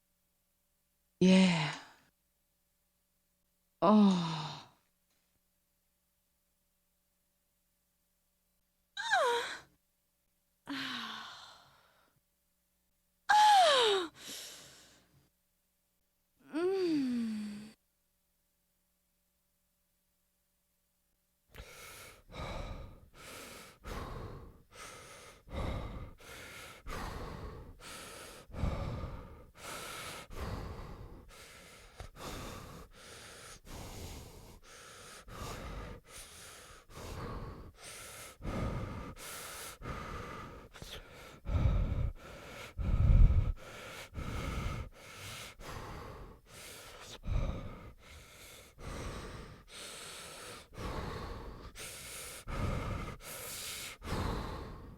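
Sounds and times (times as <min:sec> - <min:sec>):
person breathing heavily: 0:10.7 - 0:12.2, 0:13.3 - 0:15.2, 0:16.5 - 0:17.8, 0:21.5 - 0:54.9.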